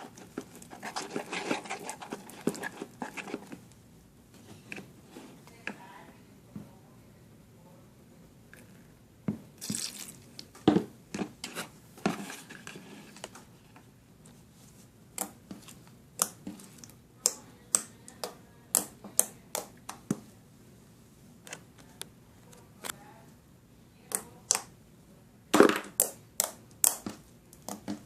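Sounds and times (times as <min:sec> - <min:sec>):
slime squelching: 0:00.0 - 0:03.8, 0:09.5 - 0:10.6, 0:14.8 - 0:20.3
slime popping: 0:09.6 - 0:10.5.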